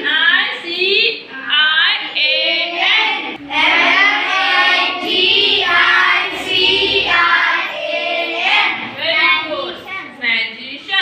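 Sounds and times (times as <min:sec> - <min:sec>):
children chanting in unison: 0:02.3 - 0:09.0.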